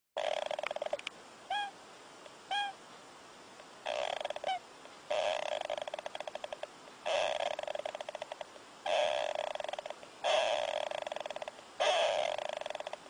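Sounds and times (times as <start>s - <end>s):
small animal snoring: 0.2s - 1.0s, 3.8s - 13.0s
high squeaky chirps: 0.2s - 1.8s, 2.5s - 2.8s, 3.9s - 13.0s.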